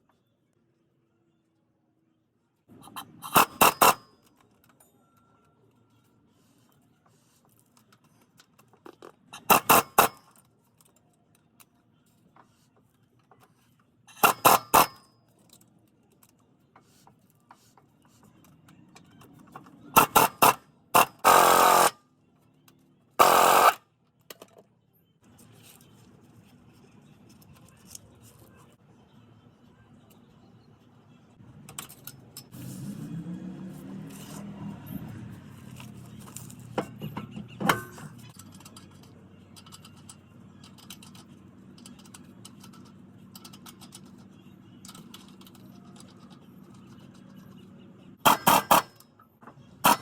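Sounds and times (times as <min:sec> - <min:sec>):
power tool tightening bolts: 0:09.4 - 0:10.2, 0:14.1 - 0:15.0, 0:20.0 - 0:22.0, 0:23.2 - 0:23.8, 0:48.2 - 0:49.0.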